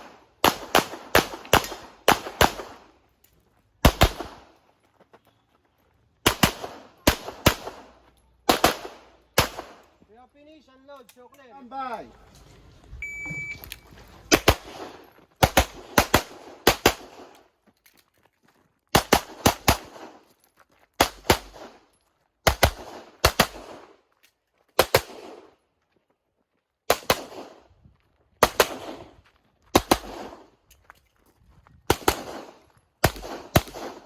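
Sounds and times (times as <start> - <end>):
pistol shots with echo: 0.0 - 2.9, 3.8 - 4.5, 6.2 - 9.9, 14.3 - 17.4, 29.8 - 30.4, 31.9 - 34.0.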